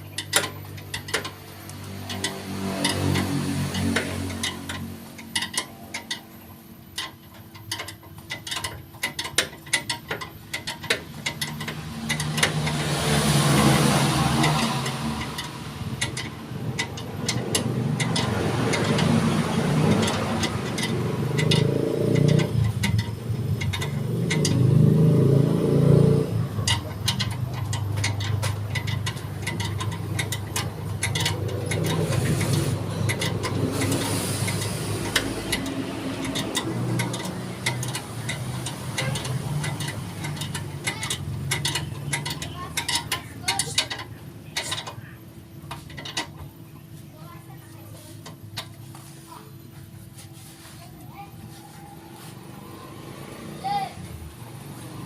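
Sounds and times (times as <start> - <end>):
car engine revving: 0.0 - 5.6, 10.6 - 43.9, 52.0 - 55.0
rapid ticking and clicking: 0.0 - 47.6.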